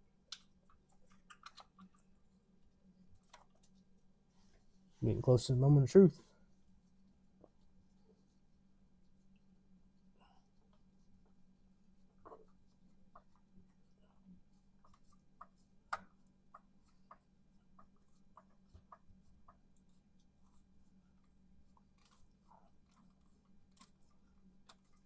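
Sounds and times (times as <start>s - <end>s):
faint steady hum: 0.0s - 25.0s
faint clicks and taps: 12.1s - 13.9s, 14.5s - 25.0s.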